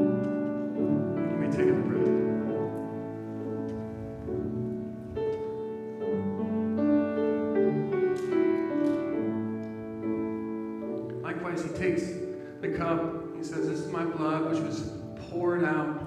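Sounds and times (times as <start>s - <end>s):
soft piano chords: 0.0s - 16.0s.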